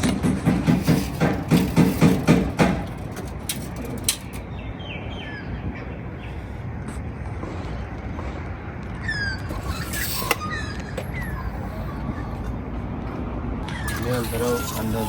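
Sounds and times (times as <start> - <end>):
birds chirping: 3.8 - 15.0.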